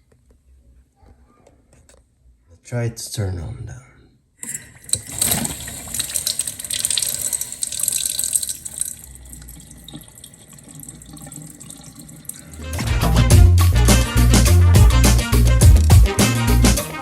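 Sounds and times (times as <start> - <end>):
water rushing through pipes: 4.4 - 13.4.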